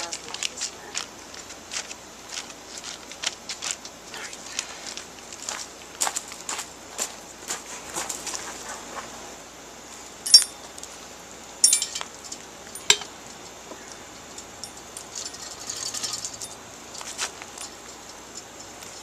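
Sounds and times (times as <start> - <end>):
metal utensil clinking on pot: 12.8 - 13.1, 14.6 - 16.6.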